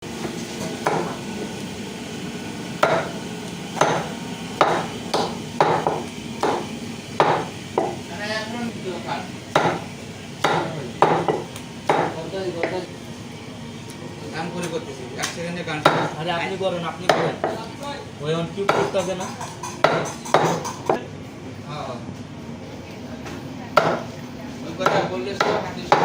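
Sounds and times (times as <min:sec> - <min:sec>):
heavy blade chopping chicken: 0:03.8 - 0:08.0, 0:09.5 - 0:12.8, 0:18.7 - 0:19.0, 0:24.8 - 0:26.0.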